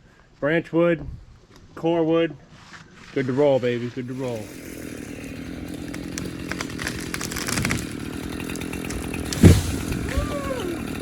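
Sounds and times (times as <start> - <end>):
engine running: 4.1 - 11.0.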